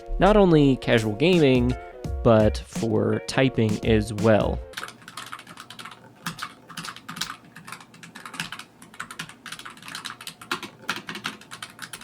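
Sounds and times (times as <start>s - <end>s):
mechanical keyboard typing: 4.7s - 12.0s.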